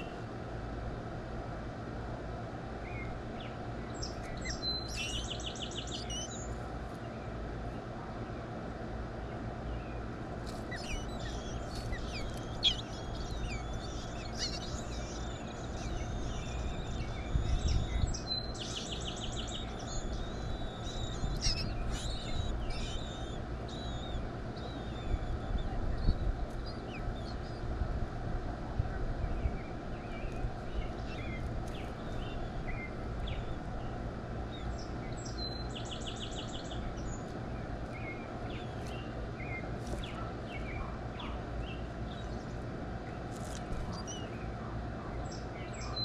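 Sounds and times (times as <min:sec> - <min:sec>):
low outdoor rumble: 0:00.0 - 0:46.0
birds chirping and calling: 0:02.9 - 0:06.6, 0:10.4 - 0:27.6, 0:29.6 - 0:46.0
bird trill: 0:04.0 - 0:06.5, 0:10.6 - 0:26.1.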